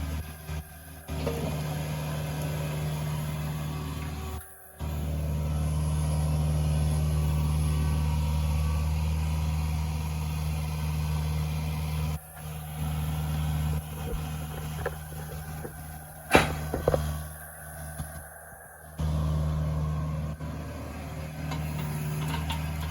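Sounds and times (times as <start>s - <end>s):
engine running: 0.0s - 22.9s
engine knocks: 13.4s - 18.2s, 21.4s - 22.9s.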